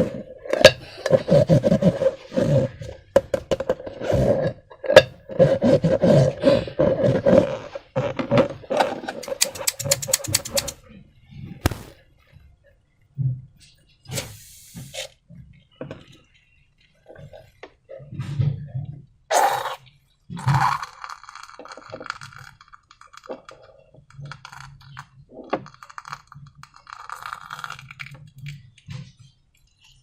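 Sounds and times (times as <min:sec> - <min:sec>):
small clicks and crackles: 0:21.0 - 0:30.0.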